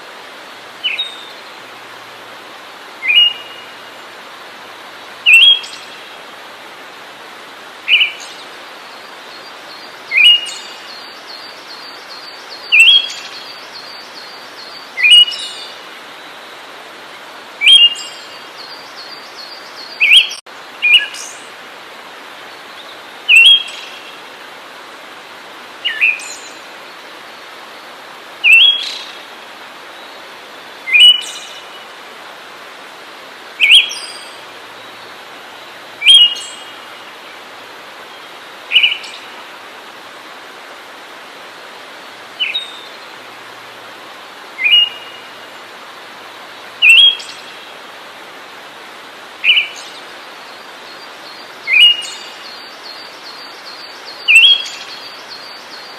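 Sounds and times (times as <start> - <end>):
steady background hiss: 0.0 - 55.9
songbird rising call: 3.0 - 3.9, 5.2 - 6.1, 7.9 - 16.4, 17.6 - 21.4, 30.8 - 31.9, 33.6 - 35.2, 35.9 - 37.3, 38.1 - 39.4, 44.6 - 45.4, 46.6 - 47.7, 49.4 - 55.9.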